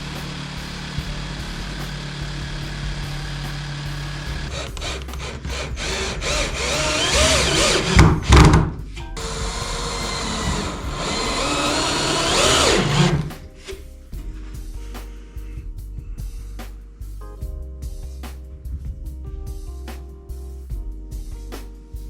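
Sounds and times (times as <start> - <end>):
power tool motor running: 0.0 - 8.5, 9.2 - 13.3
heavy knocks: 4.3 - 13.5.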